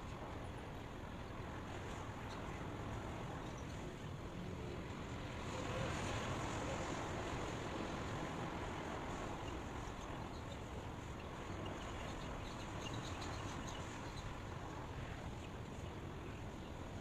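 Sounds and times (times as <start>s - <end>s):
white noise hiss: 0.0s - 17.0s.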